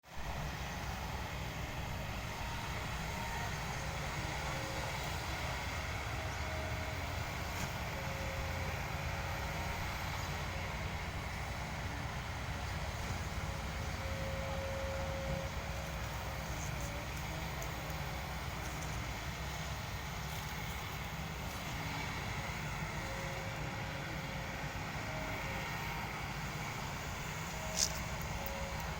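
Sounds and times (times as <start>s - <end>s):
excavator diesel engine running: 0.1s - 28.9s.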